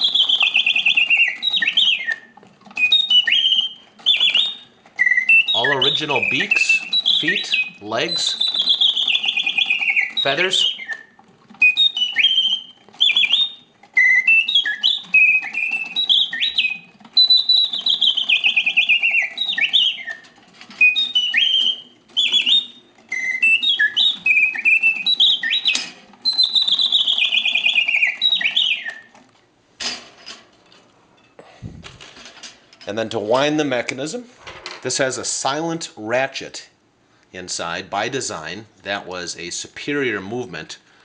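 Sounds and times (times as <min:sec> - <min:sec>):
mechanical birdsong whistle: 0:00.0 - 0:29.2.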